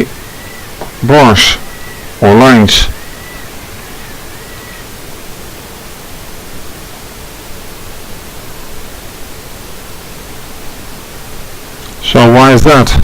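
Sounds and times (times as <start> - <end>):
faint wavering whistle: 0.0 - 5.1
faint hum: 0.0 - 13.0
steady hiss: 0.0 - 13.0.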